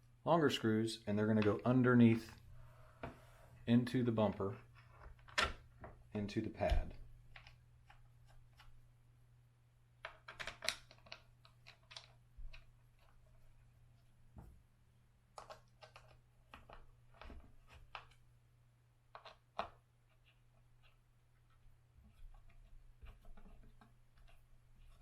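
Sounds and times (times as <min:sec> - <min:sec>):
small screws and hand tool clicking: 0:15.4 - 0:18.2.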